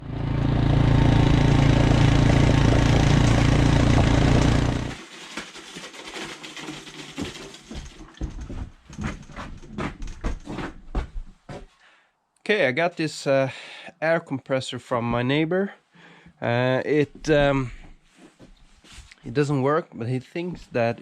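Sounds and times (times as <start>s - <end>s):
air compressor humming: 0.0s - 5.0s
handling clicks and knocks: 5.0s - 10.7s.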